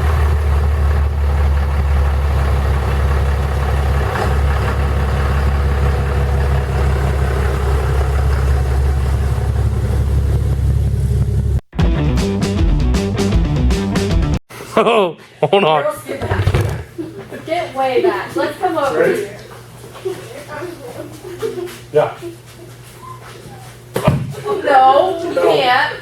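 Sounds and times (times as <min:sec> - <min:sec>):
vehicle engine idling: 0:00.0 - 0:11.6.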